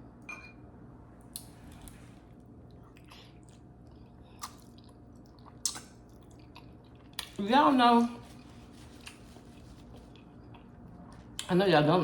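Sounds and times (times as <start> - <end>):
faint chewing: 8.2 - 11.5.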